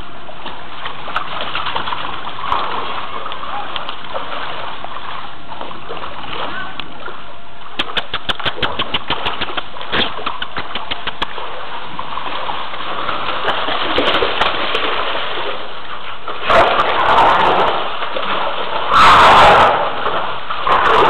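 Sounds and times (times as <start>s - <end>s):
quick run of ticks: 7.8s - 11.4s.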